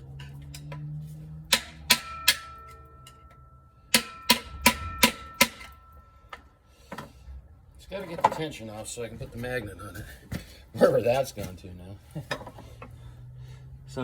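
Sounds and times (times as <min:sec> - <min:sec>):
metal-on-metal taps with ringing: 0:00.1 - 0:07.0.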